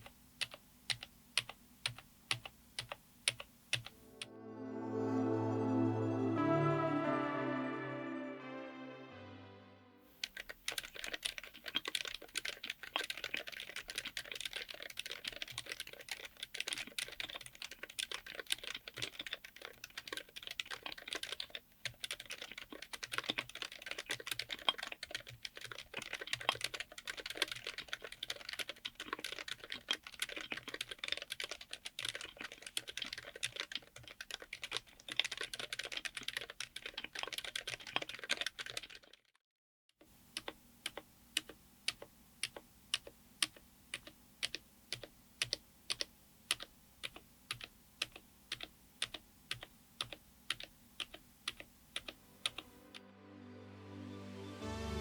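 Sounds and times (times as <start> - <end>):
fast typing on mechanical keyboard: 0.0 - 3.9, 10.2 - 39.3, 40.3 - 52.6
music: 4.0 - 10.1, 52.4 - 55.0.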